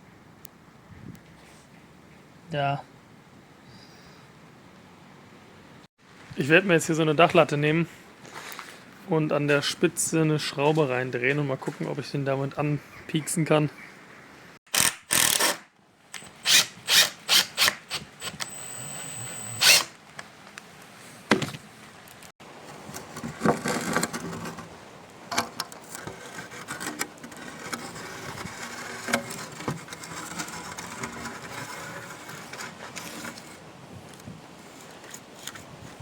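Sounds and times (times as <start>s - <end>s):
cordless drill driving screw: 14.7s - 15.6s, 16.2s - 19.9s
scraping and rubbing of wood: 22.8s - 33.6s.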